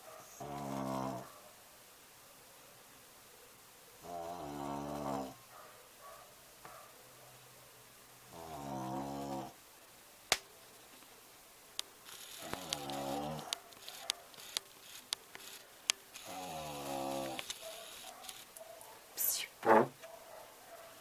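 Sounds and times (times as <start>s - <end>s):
pet snoring: 0.3s - 1.3s, 4.0s - 5.4s, 8.3s - 9.6s, 12.3s - 14.1s, 16.2s - 17.9s
sharp clicks: 11.8s - 16.4s.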